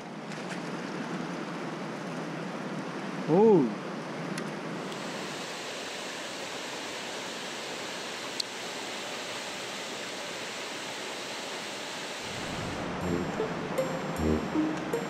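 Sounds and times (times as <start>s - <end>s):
music: 12.3s - 15.0s.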